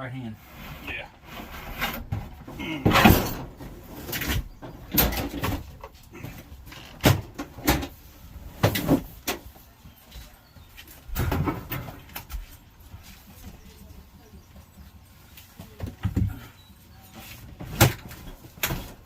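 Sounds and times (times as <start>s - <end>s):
toolbox knocks and scrapes: 1.3s - 5.8s.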